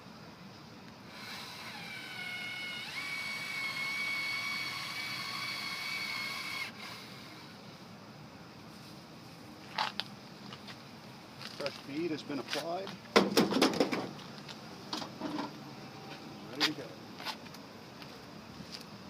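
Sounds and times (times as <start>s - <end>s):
caulking gun motor whining: 1.1s - 7.7s.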